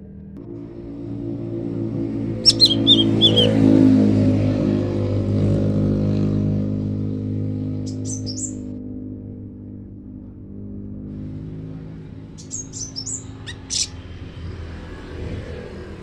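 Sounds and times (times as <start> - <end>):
vehicle engine passing: 0.0 - 16.0
small bird chirping: 2.4 - 3.6, 7.8 - 8.7, 12.3 - 14.1.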